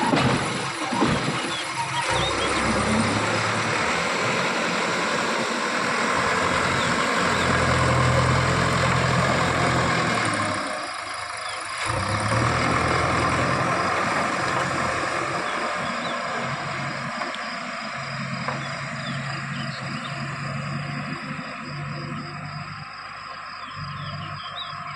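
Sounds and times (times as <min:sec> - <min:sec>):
diesel engine under load: 0:00.0 - 0:24.9.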